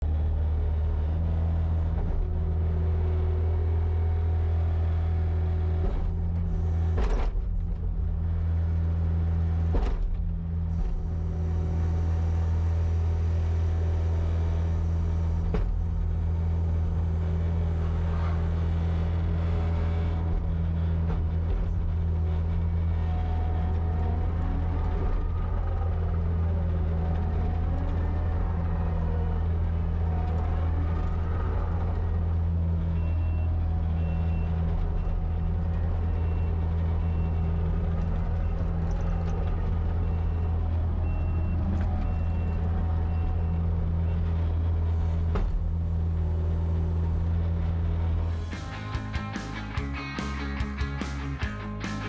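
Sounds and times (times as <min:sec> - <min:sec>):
track loader diesel engine running: 0:00.0 - 0:52.0
high steady whine: 0:48.3 - 0:52.0.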